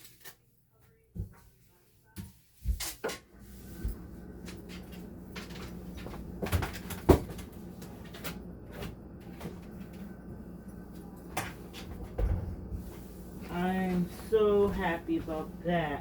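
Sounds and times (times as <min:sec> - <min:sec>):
kitchen items knocking and clattering: 0:02.2 - 0:10.2, 0:11.3 - 0:13.0
steady low hum: 0:03.2 - 0:16.0.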